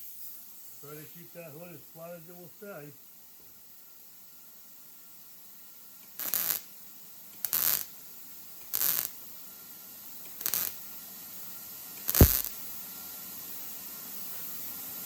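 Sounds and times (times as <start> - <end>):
welder crackling bursts: 6.0 - 15.0.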